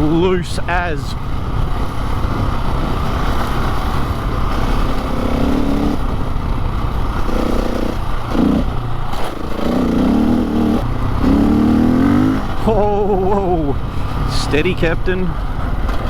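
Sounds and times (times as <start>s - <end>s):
dirt bike engine revving: 0.0s - 15.5s
steady rushing noise: 0.0s - 16.0s.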